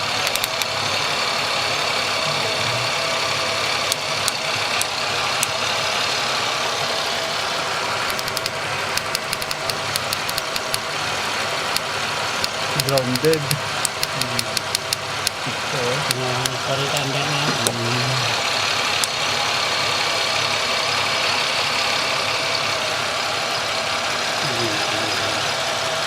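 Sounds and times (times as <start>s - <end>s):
car engine idling: 0.0s - 26.0s
sharp engine ticks: 0.0s - 26.0s.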